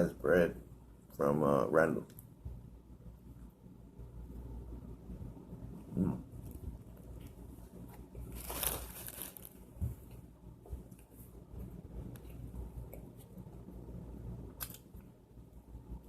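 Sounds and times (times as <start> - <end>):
man humming mm: 5.8 - 6.3.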